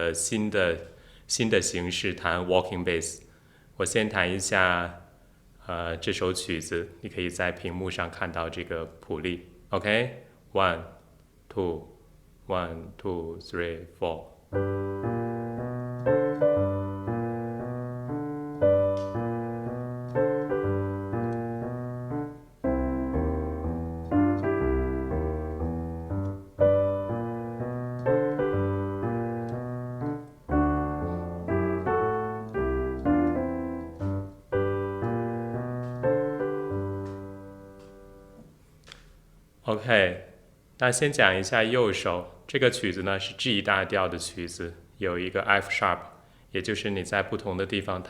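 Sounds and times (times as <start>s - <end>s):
blues piano piece: 14.5s - 38.5s.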